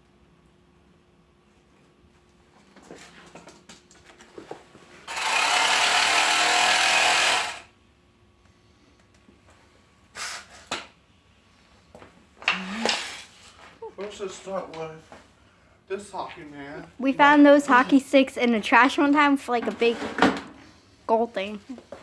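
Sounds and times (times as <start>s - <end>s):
power tool running: 5.1s - 7.7s.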